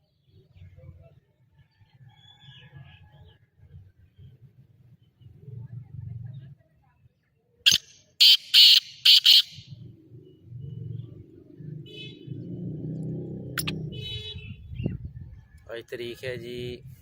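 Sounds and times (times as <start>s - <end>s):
francolin harsh rasping call: 7.7s - 9.7s.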